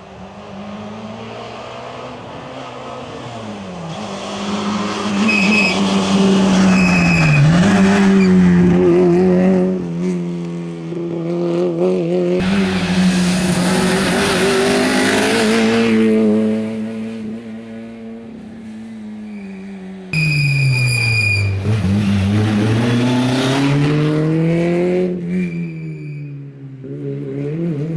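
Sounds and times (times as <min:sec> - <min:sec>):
rally car engine at high revs: 0:00.0 - 0:27.9
tyres on gravel rushing: 0:12.4 - 0:16.9.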